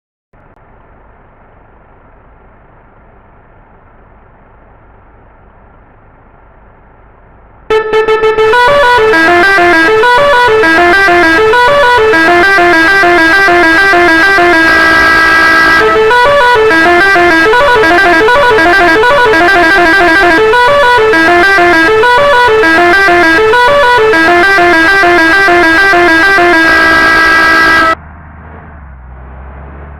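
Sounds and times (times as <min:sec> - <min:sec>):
musical bus horn melody: 0:07.7 - 0:28.0.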